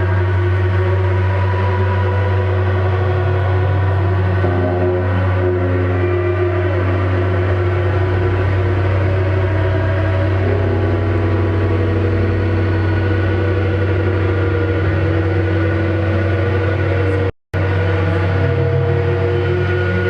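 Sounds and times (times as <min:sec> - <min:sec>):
deep hum: 0:00.0 - 0:20.0
held drone tones: 0:00.0 - 0:20.0.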